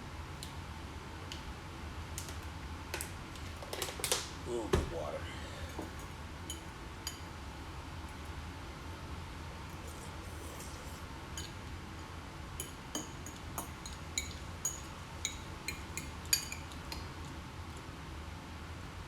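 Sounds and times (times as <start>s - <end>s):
low room hum: 0.0s - 19.0s
cutlery clinking against a plate: 9.7s - 11.6s, 12.6s - 17.1s.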